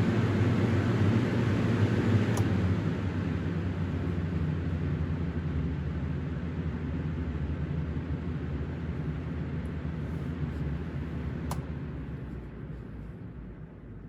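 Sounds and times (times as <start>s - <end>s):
sharp click: 2.3s - 2.5s, 11.5s - 11.7s.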